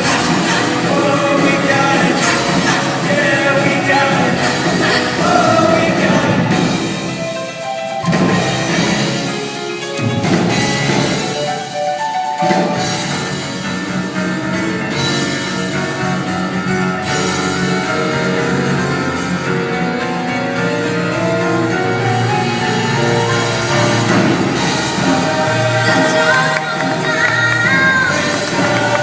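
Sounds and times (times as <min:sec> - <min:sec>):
drums: 0:00.0 - 0:29.0
mallet percussion melody: 0:22.8 - 0:29.0.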